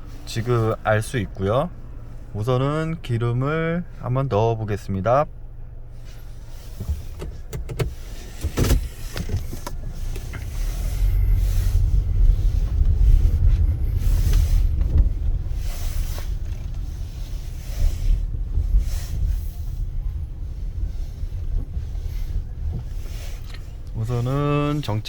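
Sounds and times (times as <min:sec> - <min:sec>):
car engine and tyre rumble: 0:00.0 - 0:25.0.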